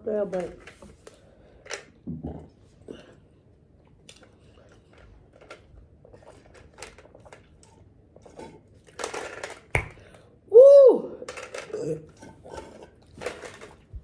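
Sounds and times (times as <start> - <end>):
small clicks and rustles on a table: 4.1 - 7.8.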